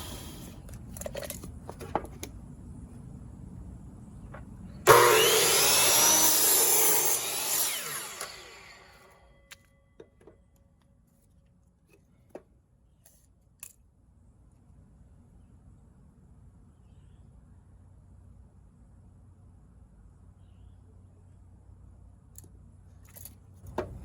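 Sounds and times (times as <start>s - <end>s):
power tool cutting wood: 4.9s - 9.2s.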